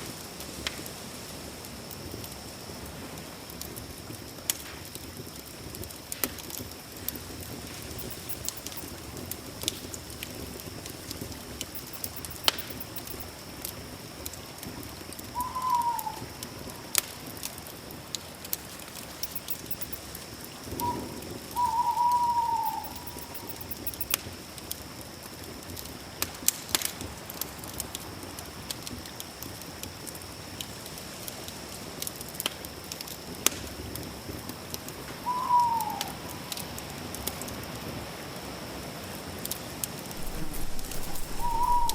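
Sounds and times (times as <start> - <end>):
campfire crackling and popping: 3.2 - 15.3, 31.5 - 34.0
steady high-pitched hum: 7.8 - 9.5, 11.6 - 13.6, 18.8 - 24.2, 40.2 - 41.9
bird calling: 7.9 - 8.9, 11.8 - 13.2, 15.4 - 16.9, 19.1 - 20.0, 20.7 - 24.1, 40.2 - 41.9.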